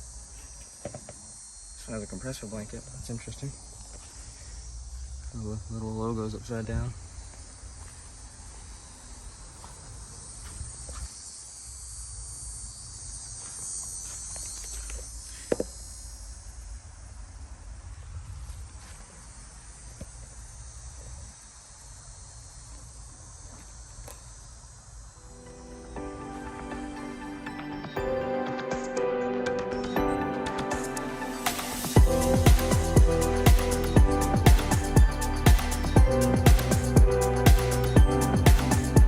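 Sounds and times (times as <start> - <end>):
high-pitched insect chorus: 0.0 - 39.0.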